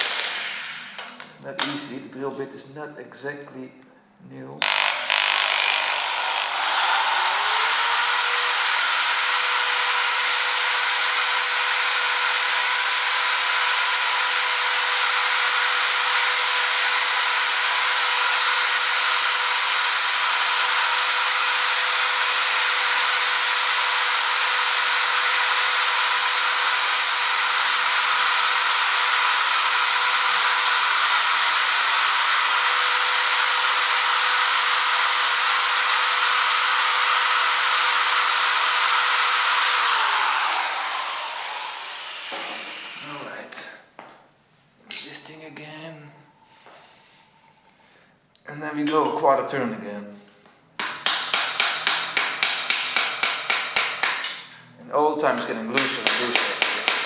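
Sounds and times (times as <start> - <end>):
electric drill whining: 0.0 - 1.0, 4.6 - 43.3.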